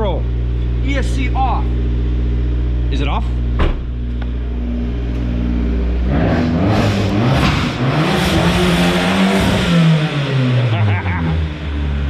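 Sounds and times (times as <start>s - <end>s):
car engine revving: 0.2s - 12.0s.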